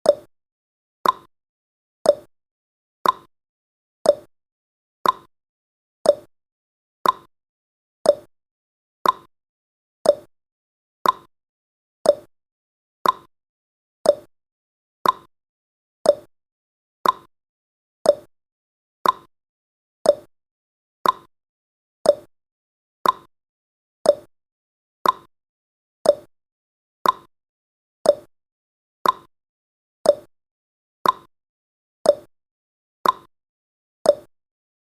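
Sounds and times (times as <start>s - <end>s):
clock ticking: 1.0s - 1.3s, 5.0s - 5.3s, 7.0s - 7.3s, 8.1s - 8.3s, 9.0s - 9.3s, 10.1s - 10.3s, 11.0s - 11.3s, 12.1s - 12.3s, 13.0s - 13.3s, 14.1s - 14.3s, 15.0s - 15.3s, 16.1s - 16.3s, 17.0s - 17.3s, 18.1s - 18.3s, 19.0s - 19.3s, 20.1s - 20.3s, 21.0s - 21.3s, 22.1s - 22.3s, 23.0s - 23.3s, 24.1s - 24.3s, 25.0s - 25.3s, 26.0s - 26.3s, 27.0s - 27.3s, 28.1s - 28.3s, 29.0s - 29.3s, 30.1s - 30.3s, 31.0s - 31.3s, 32.1s - 32.3s, 33.0s - 33.3s, 34.1s - 34.3s.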